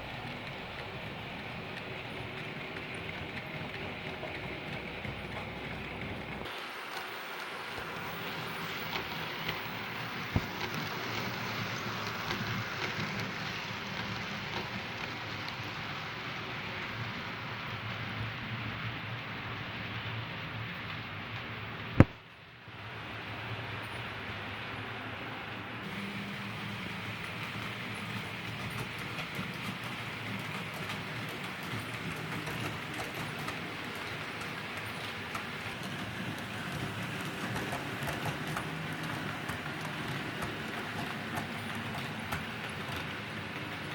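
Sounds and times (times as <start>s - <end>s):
model train rumbling on track: 0.0s - 43.9s
wheels clicking on rails: 0.0s - 43.9s
model train motor hum: 25.9s - 43.9s.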